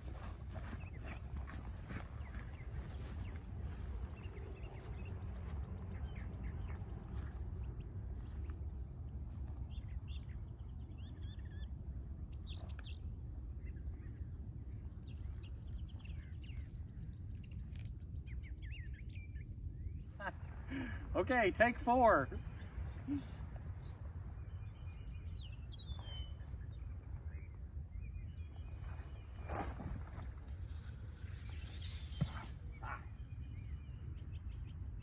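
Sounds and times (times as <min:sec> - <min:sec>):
small birds chirping: 0:00.0 - 0:09.0, 0:22.4 - 0:35.0.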